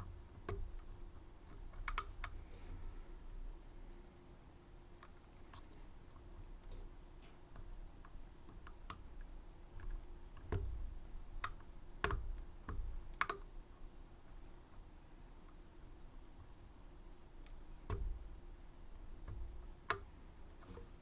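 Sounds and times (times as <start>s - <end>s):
small metallic clicks and taps: 5.0s - 10.8s, 11.4s - 13.5s, 19.2s - 20.9s.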